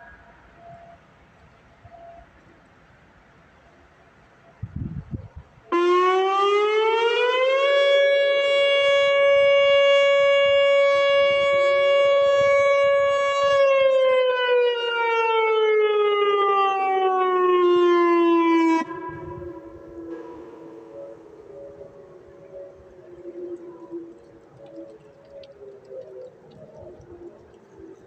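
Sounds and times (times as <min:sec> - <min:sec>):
warning siren wailing: 0:05.7 - 0:28.0.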